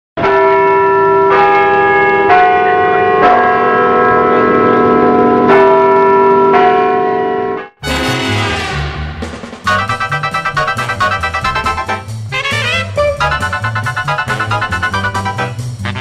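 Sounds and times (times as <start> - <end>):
bells ringing: 0.2 - 7.7, 9.7 - 12.0, 13.2 - 15.6
music: 7.8 - 16.0.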